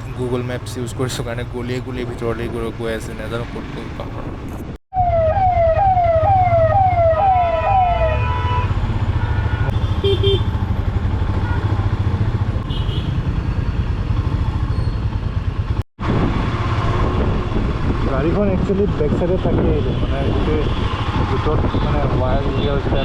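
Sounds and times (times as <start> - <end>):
street traffic rumble: 0.0 - 4.8, 5.7 - 23.0
siren wailing: 4.9 - 8.7.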